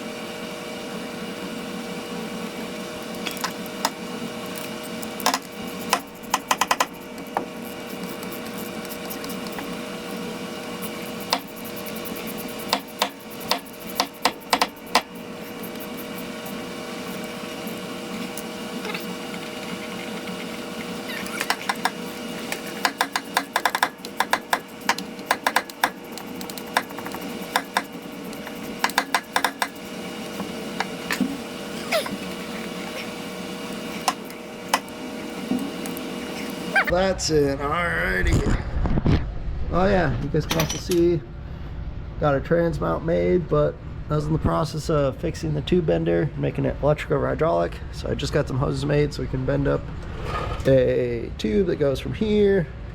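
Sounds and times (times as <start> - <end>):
steady hum: 0.0 - 52.9
hand ratchet clicking: 3.1 - 9.8, 10.8 - 16.3, 21.1 - 30.0.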